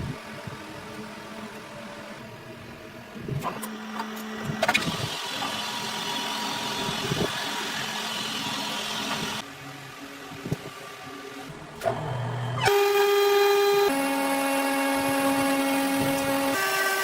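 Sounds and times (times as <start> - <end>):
lathe motor hum: 0.0 - 17.0
hissing of metal being cut: 3.2 - 17.0.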